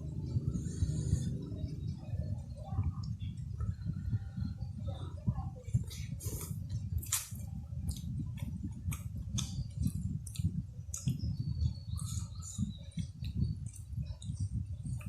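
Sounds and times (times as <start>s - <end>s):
mouth clicks and smacks: 6.0s - 15.0s.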